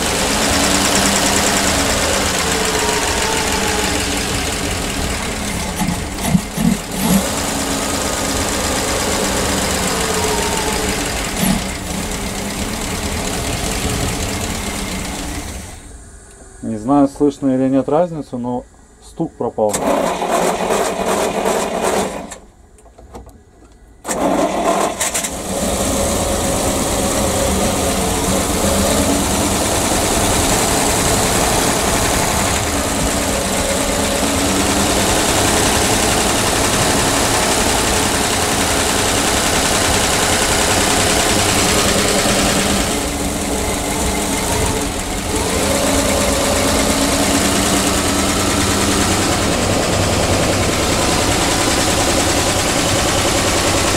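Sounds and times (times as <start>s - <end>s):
bus engine idling: 0.0s - 53.9s.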